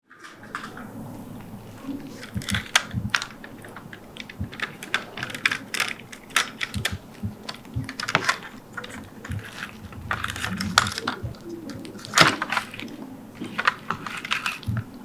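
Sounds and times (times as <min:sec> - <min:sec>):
typewriter keys clacking: 0:01.7 - 0:15.0.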